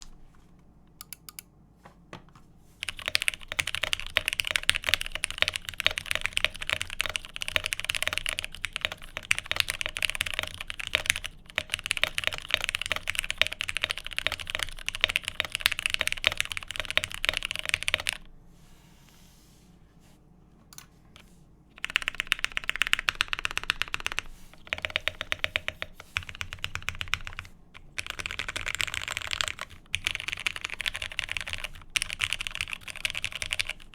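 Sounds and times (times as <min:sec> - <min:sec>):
fast typing on mechanical keyboard: 0:02.8 - 0:18.3, 0:21.8 - 0:33.9.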